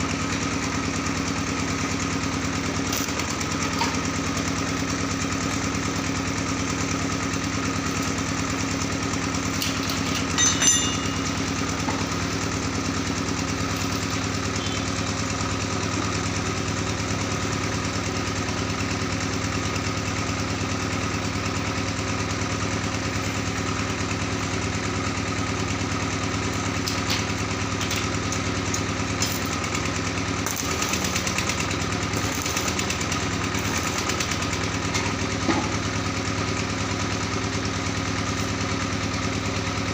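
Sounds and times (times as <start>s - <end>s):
engine humming steadily: 0.0s - 39.9s
sharp metallic clinks: 9.6s - 12.1s.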